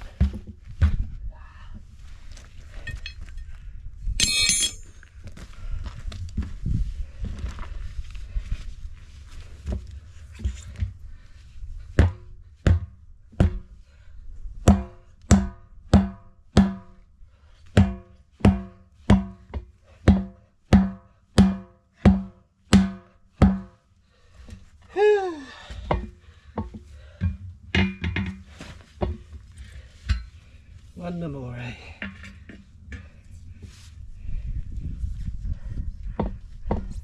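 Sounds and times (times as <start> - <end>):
metal rim ringing: 4.2 - 5.0.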